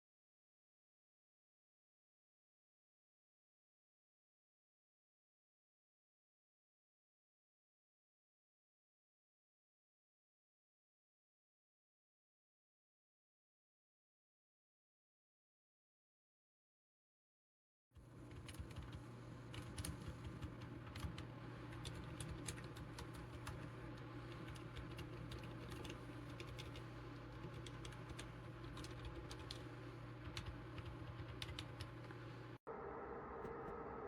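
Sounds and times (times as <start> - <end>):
steady low hum: 18.0 - 34.0
soft keyboard clicks: 18.2 - 32.2.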